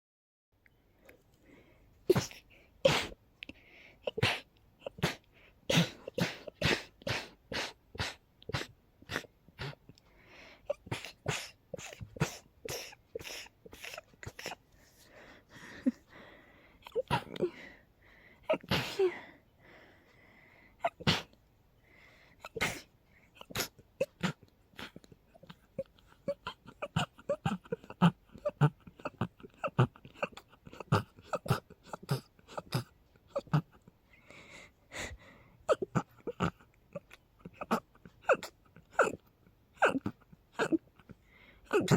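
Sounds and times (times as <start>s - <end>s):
person sneezing: 2.1s - 3.2s, 4.1s - 9.8s, 10.7s - 14.6s, 16.8s - 17.7s, 18.5s - 19.3s, 20.8s - 21.4s, 22.4s - 25.0s.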